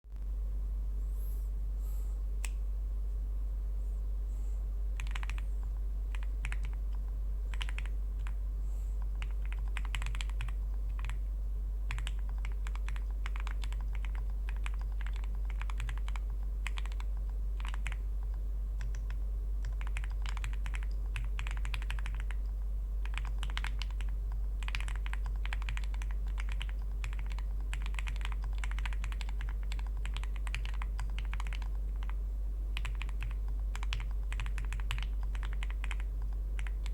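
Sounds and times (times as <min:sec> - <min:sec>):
low steady hum: 0:00.1 - 0:36.9
mechanical keyboard typing: 0:05.0 - 0:05.4, 0:06.1 - 0:08.4, 0:09.0 - 0:11.2, 0:11.9 - 0:32.2, 0:32.8 - 0:36.9.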